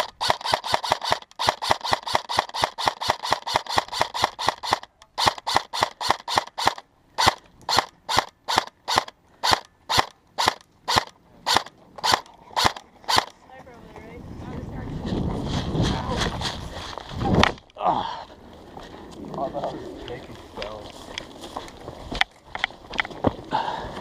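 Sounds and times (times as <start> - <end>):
airsoft gun firing: 0.0 - 13.3.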